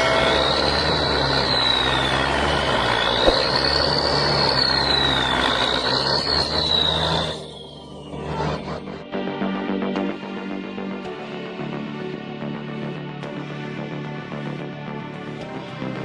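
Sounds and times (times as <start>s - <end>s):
high wavering whine: 0.0s - 8.2s.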